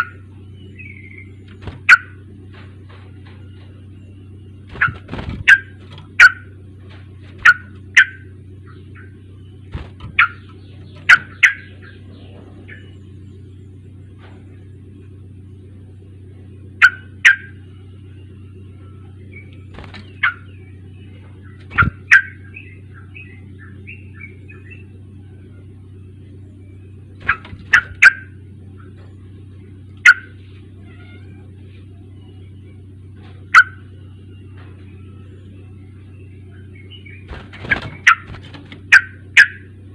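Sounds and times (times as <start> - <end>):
bird calls: 0.0 - 39.9
steady low hum: 0.0 - 39.9
bird chattering: 4.7 - 6.6, 7.4 - 13.1, 19.3 - 24.9, 27.2 - 29.0, 36.5 - 39.8.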